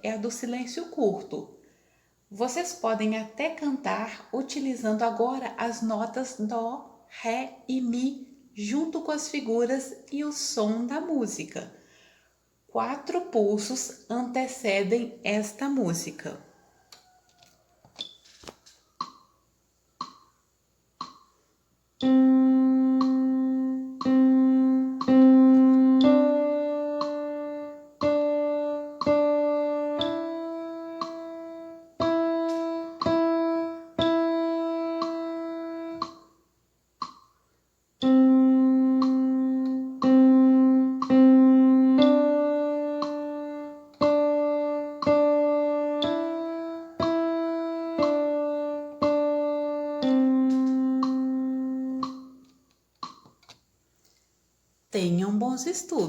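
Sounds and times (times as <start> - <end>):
metronome click: 20.0 - 20.3, 21.0 - 21.4, 22.0 - 36.4, 37.0 - 37.3, 38.0 - 53.6
keyboard playing simple melody: 22.0 - 36.4, 38.0 - 53.2.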